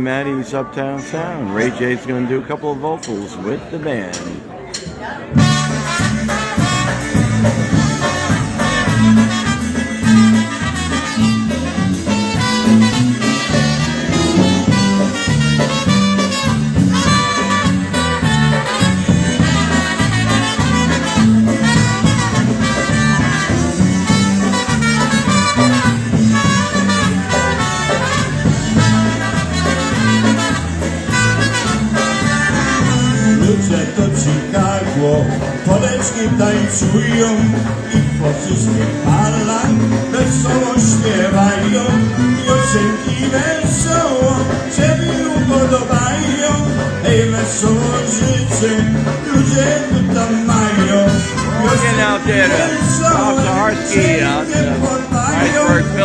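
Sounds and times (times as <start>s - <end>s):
polka band playing: 5.3s - 56.0s
stepping bass line: 11.9s - 24.4s, 51.4s - 56.0s.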